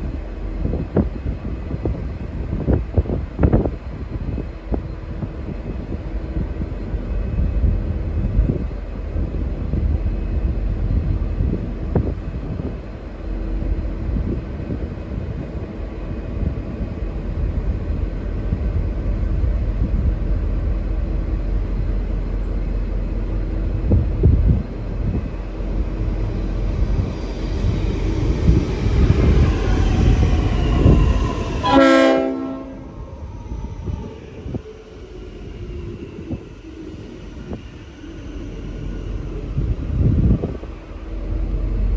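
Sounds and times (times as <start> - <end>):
diesel locomotive rumbling: 0.0 - 41.9
train horn blast: 31.6 - 33.0.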